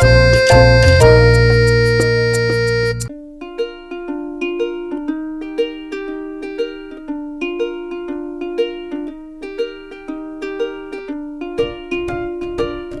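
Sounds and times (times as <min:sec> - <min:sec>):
low bass: 0:00.0 - 0:03.1
plucked string tune: 0:00.0 - 0:13.0.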